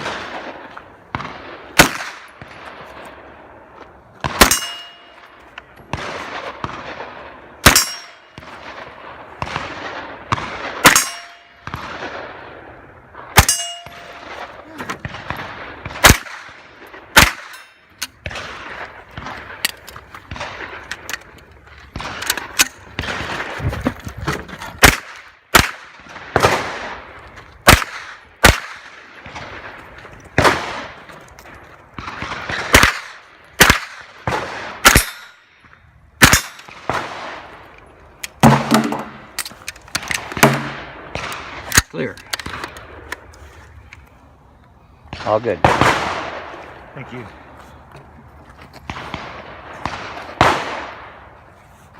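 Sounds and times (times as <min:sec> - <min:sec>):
carbine gunshots: 0:00.0 - 0:03.4, 0:04.2 - 0:23.6, 0:24.6 - 0:31.1, 0:31.9 - 0:37.7, 0:38.3 - 0:43.1, 0:45.1 - 0:47.2, 0:48.8 - 0:51.3
steel targets clanging: 0:04.4 - 0:05.2, 0:07.7 - 0:08.3, 0:10.8 - 0:11.6, 0:13.4 - 0:14.2.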